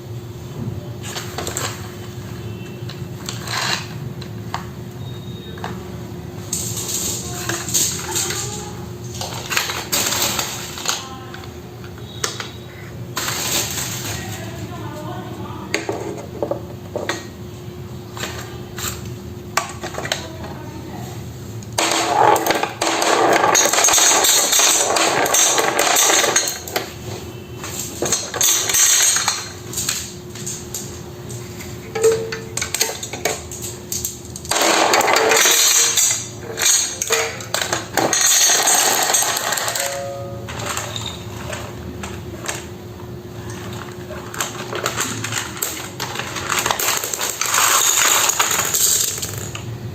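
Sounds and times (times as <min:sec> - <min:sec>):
marbles rolling down wooden track: 0:21.8 - 0:26.6, 0:34.5 - 0:40.8, 0:44.4 - 0:49.7.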